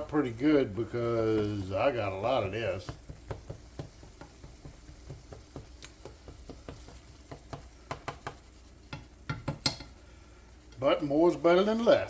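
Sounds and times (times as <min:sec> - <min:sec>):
utensil scraping a skillet: 0:00.0 - 0:12.0.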